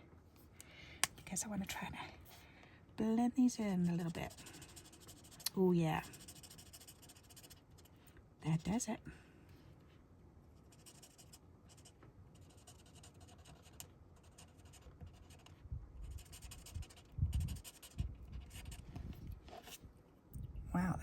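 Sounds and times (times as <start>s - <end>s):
marker scratching on paper: 3.8s - 7.9s, 10.6s - 18.8s.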